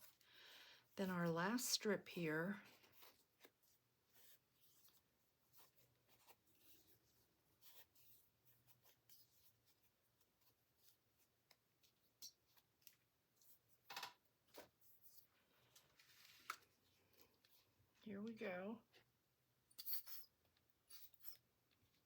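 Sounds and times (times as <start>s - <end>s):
paper pages rustling: 14.5s - 17.7s.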